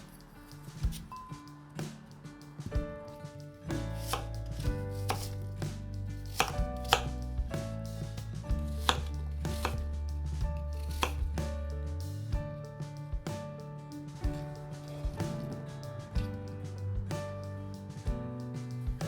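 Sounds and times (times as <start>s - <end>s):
background music: 0.0s - 19.0s
knife cutting on cutting board: 3.7s - 5.4s, 6.2s - 7.2s, 8.6s - 9.9s, 10.8s - 11.2s.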